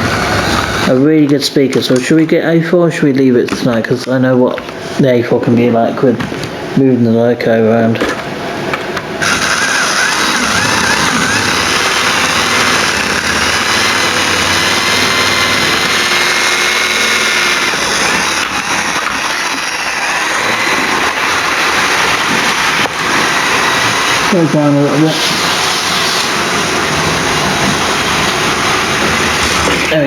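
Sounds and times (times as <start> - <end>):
model train whirring rumble: 0.0 - 1.0, 9.2 - 30.0.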